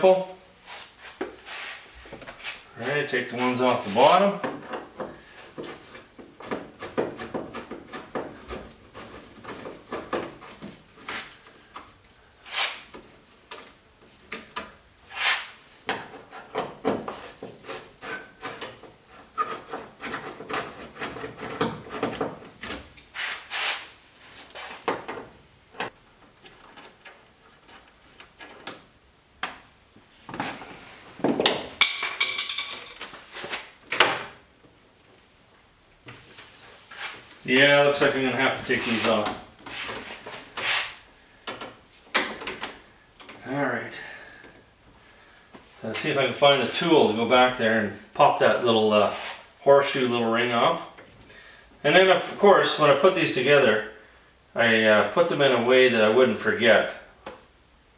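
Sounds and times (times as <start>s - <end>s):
hand tools clicking and knocking: 4.4s - 11.1s, 31.3s - 33.1s.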